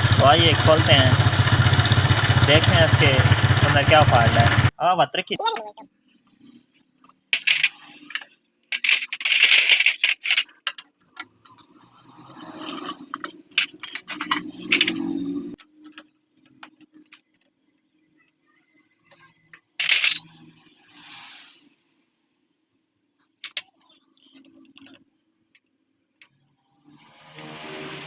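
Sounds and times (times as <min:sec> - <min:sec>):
metal tools clinking and clattering: 0:07.0 - 0:11.6, 0:12.8 - 0:17.4, 0:19.8 - 0:20.3.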